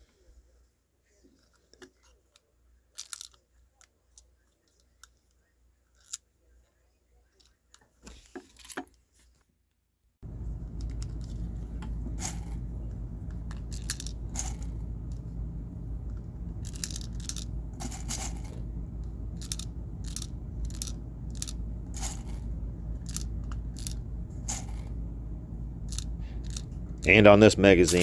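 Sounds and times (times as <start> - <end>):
steady low hum: 10.2 - 28.0
bbs clicking into magazine: 10.3 - 24.9.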